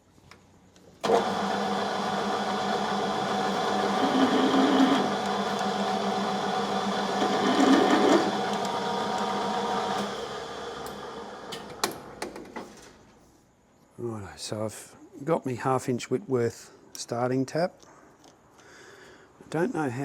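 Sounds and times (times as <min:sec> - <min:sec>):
metal lathe running with gear whine: 0:01.0 - 0:11.5.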